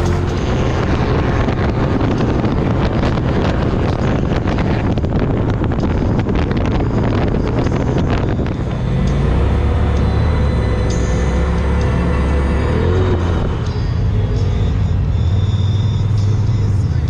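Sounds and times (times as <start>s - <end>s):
wind buffeting microphone: 0.0s - 11.8s
vehicle engine rumble: 0.0s - 17.0s.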